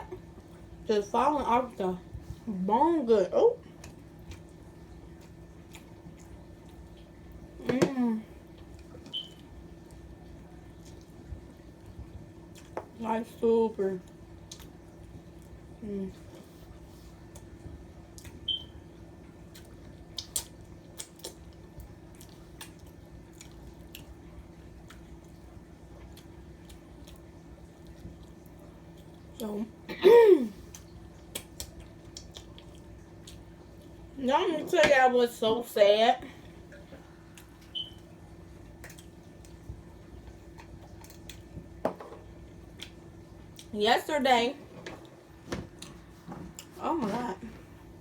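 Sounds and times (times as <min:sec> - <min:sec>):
faint steady hum: 0:00.0 - 0:48.0
chewing with wet mouth clicks: 0:03.8 - 0:07.1, 0:08.6 - 0:12.8, 0:14.0 - 0:15.6, 0:17.3 - 0:18.7, 0:19.4 - 0:29.4, 0:30.7 - 0:33.9, 0:36.7 - 0:41.6, 0:42.7 - 0:43.7.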